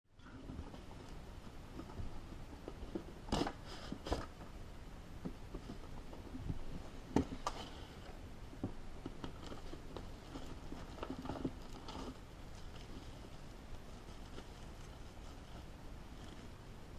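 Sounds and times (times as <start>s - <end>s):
cardboard packaging rustling: 5.5s - 16.6s.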